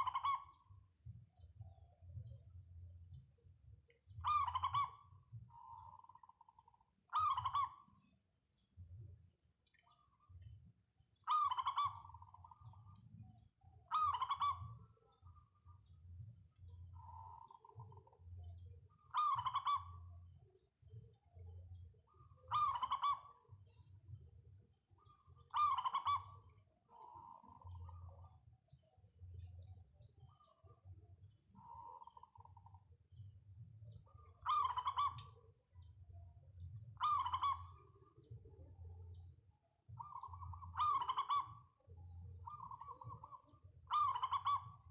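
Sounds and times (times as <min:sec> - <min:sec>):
doves cooing: 0:00.0 - 0:00.7, 0:04.2 - 0:06.5, 0:07.1 - 0:08.0, 0:11.3 - 0:13.0, 0:13.9 - 0:14.9, 0:19.0 - 0:20.0, 0:22.5 - 0:23.5, 0:25.0 - 0:28.0, 0:34.1 - 0:35.5, 0:37.0 - 0:38.3, 0:40.0 - 0:44.9.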